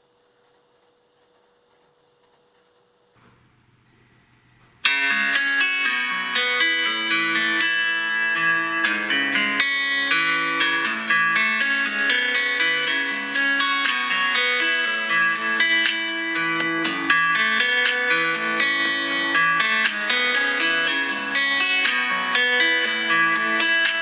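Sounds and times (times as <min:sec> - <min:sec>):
plucked guitar-like ringtone melody: 0:04.8 - 0:24.0.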